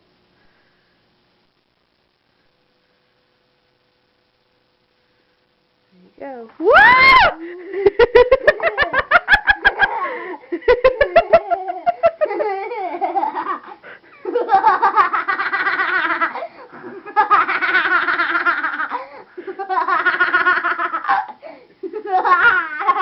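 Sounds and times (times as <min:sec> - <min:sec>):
young child laughing: 0:07.6 - 0:23.0.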